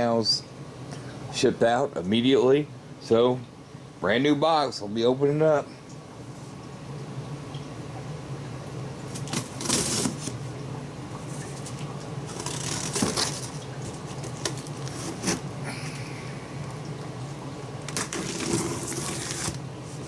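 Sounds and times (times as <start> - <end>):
steady low hum: 0.0 - 20.0
cardboard ripping and rustling: 9.1 - 10.5, 11.5 - 15.5, 17.9 - 20.0.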